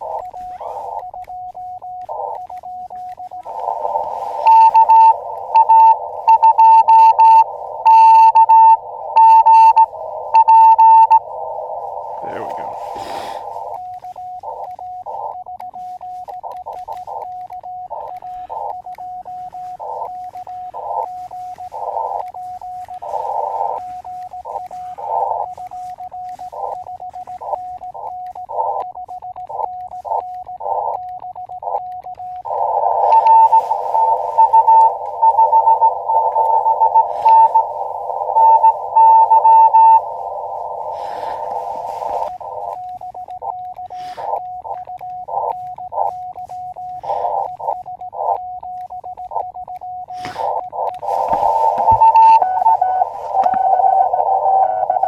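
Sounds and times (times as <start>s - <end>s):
higher keyed morse code tone: 0.0s - 55.0s
radio band hiss: 0.0s - 55.0s
steady morse tone: 0.0s - 55.0s.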